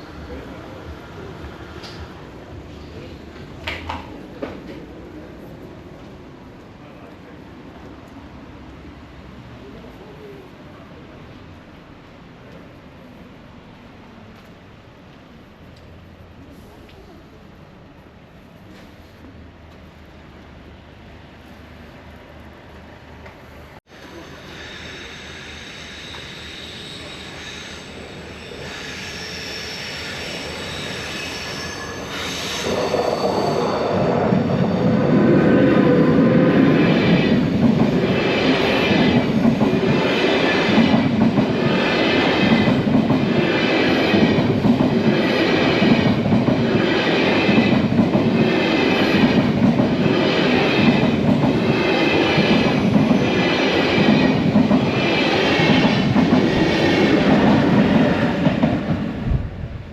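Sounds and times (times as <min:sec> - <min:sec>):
train passing: 0:00.0 - 0:59.9
high wheel squeal: 0:24.0 - 0:35.1.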